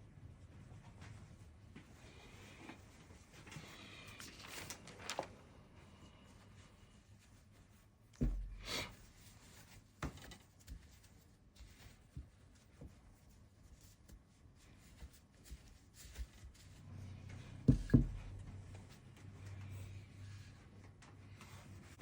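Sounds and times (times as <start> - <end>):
light knocks and rubs on a desk: 8.2 - 13.4, 14.8 - 19.7.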